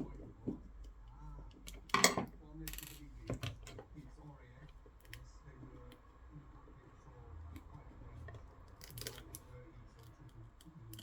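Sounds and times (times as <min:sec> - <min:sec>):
small parts and tools clicking: 0:00.8 - 0:03.9, 0:08.3 - 0:11.0.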